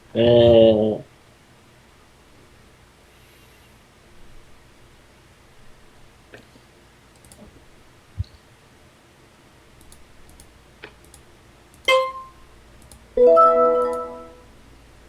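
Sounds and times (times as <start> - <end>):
computer mouse clicks: 7.1 - 7.5, 9.8 - 11.9, 12.8 - 13.0
electronic chime: 13.2 - 14.4.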